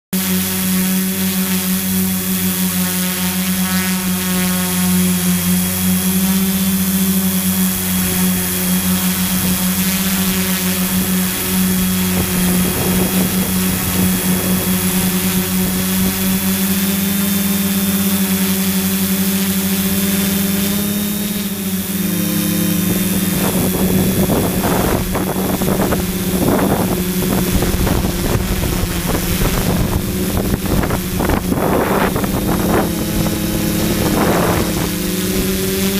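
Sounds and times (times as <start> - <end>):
drone propellers humming: 0.2 - 35.9
wind buffeting microphone: 9.2 - 17.6, 21.0 - 35.9.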